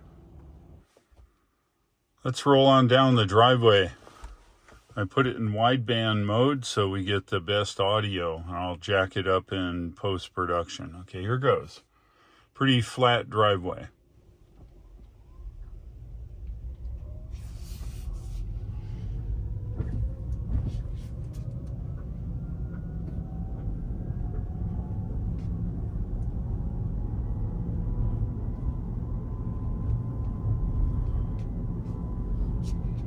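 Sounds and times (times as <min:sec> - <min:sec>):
road rumble: 0:13.6 - 0:33.0
drivetrain whine rising in pitch: 0:14.2 - 0:33.0.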